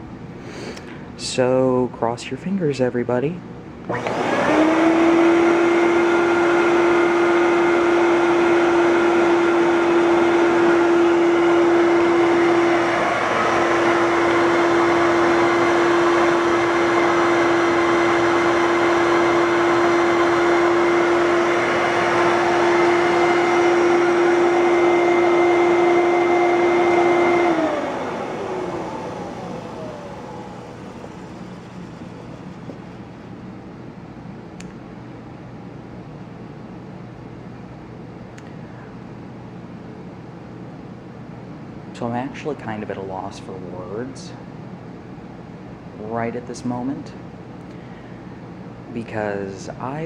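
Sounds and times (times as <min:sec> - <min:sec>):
vacuum cleaner motor whining: 0:03.9 - 0:33.3.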